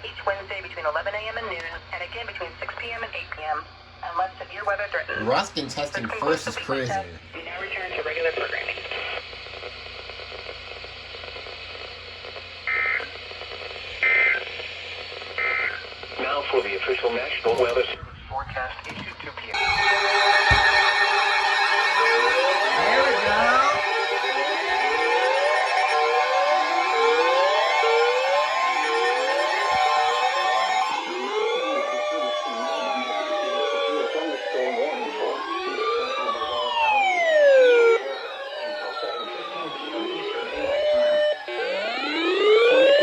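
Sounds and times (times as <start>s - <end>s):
faint radio hiss: 0.0s - 19.6s
electronic siren tones sliding: 18.9s - 43.0s
low warble: 19.0s - 26.5s
buzzy digital tone squawks: 19.6s - 26.9s.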